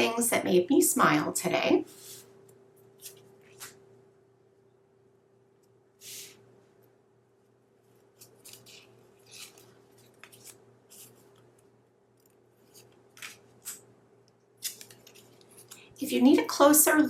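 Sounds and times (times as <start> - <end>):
cards rustling and tapping: 8.1 - 11.6, 14.6 - 15.9.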